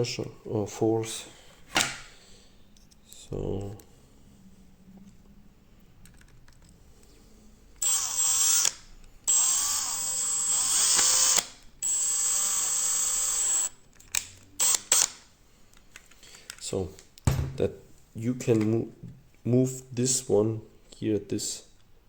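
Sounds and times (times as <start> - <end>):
electric screwdriver motor whine: 7.8 - 13.8, 14.6 - 15.2.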